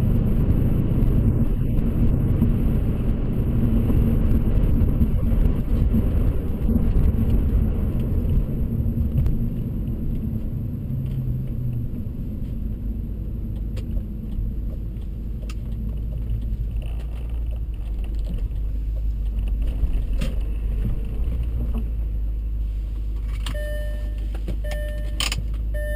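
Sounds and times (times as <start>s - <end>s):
vehicle engine and road rumble: 0.0s - 25.9s
short repeating tone: 23.5s - 25.9s.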